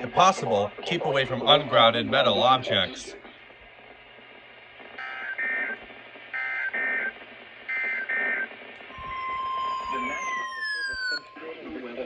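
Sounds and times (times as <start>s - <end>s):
steady warning alarm tone: 6.4s - 7.1s, 7.7s - 12.0s
screechy digital data tones: 7.8s - 12.0s.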